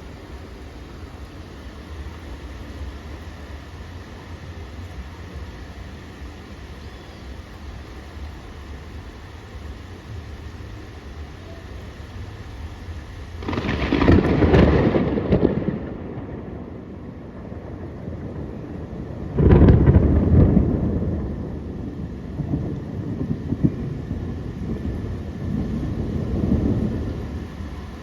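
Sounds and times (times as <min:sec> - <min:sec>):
steady rain: 0:00.0 - 0:28.0
thunder rumbling: 0:07.4 - 0:28.0.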